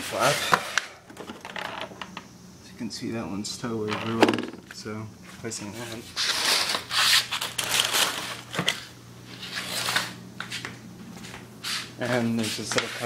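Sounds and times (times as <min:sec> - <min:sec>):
faint steady hum: 0:00.0 - 0:13.0
packaging rustling and crinkling: 0:06.2 - 0:08.9.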